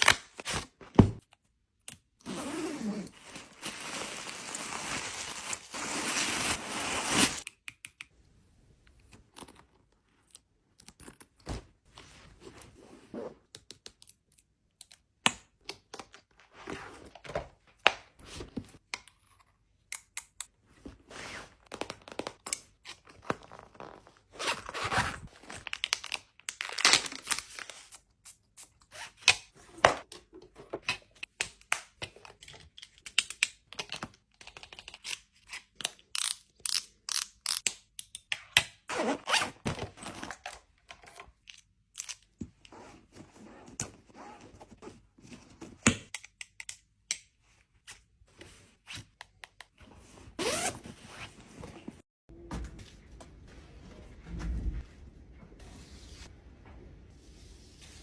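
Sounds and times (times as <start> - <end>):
paper rustling and tearing: 3.1 - 7.5.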